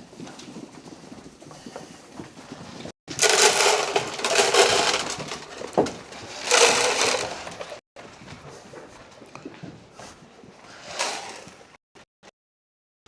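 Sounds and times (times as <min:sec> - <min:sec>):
grain pouring into feeder: 0:03.1 - 0:07.8.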